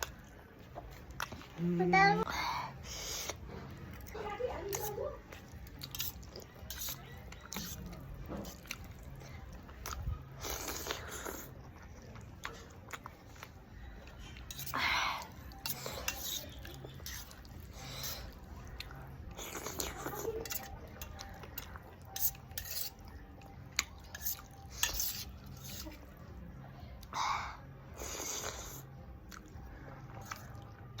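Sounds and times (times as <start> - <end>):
mouth eating noises: 4.7 - 27.2, 27.9 - 31.0.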